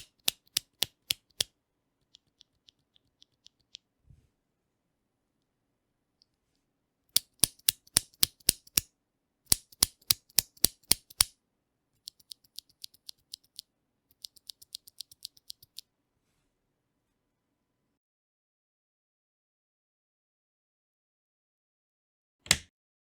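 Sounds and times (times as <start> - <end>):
mechanical keyboard key clicks: 0.0 - 1.5, 7.1 - 8.9, 9.5 - 11.3, 12.1 - 15.8.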